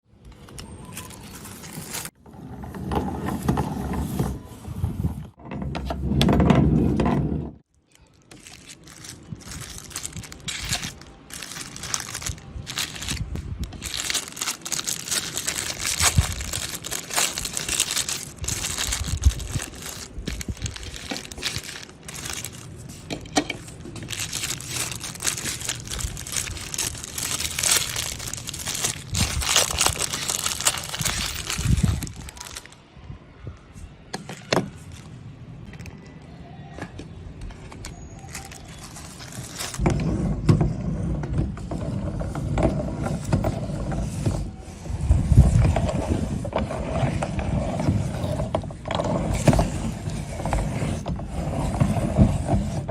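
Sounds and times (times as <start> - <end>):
meat grinder crunching: 13.8 - 22.5, 24.0 - 32.4.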